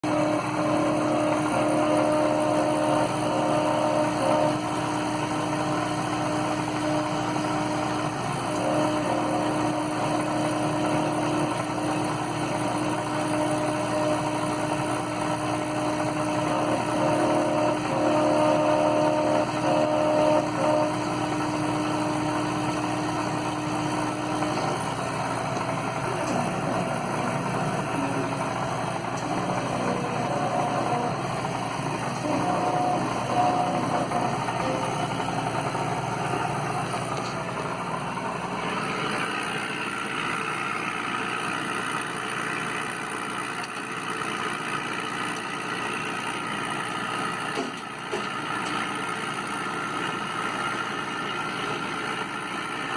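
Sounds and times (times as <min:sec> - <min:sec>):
held tone: 0:00.0 - 0:39.6
laser cutter whirring hum: 0:00.0 - 0:52.9.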